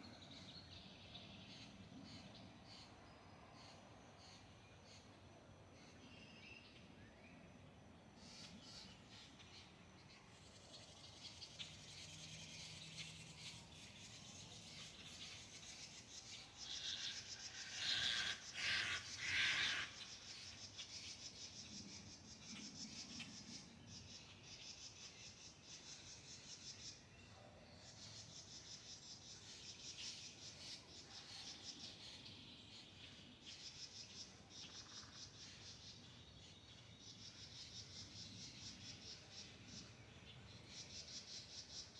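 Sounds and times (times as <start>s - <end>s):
insects trilling: 8.2s - 27.0s.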